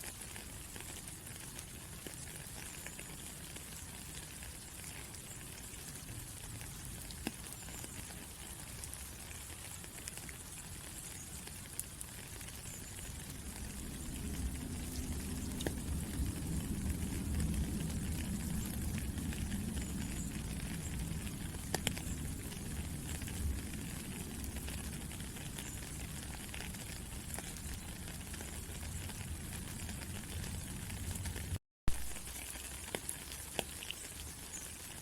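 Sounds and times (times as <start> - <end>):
raindrops ticking: 0.1 - 35.0
rain hissing: 0.2 - 35.0
low rumble: 13.2 - 25.1.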